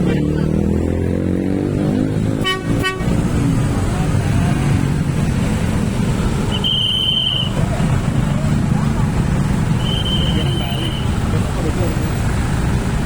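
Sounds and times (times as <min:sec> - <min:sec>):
bus horn toots: 0:02.4 - 0:03.3
bus engine running: 0:02.4 - 0:13.0.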